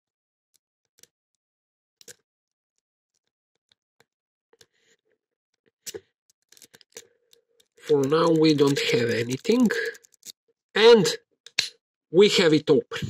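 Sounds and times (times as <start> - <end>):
lock pick clicking in padlock: 6.3 - 10.4.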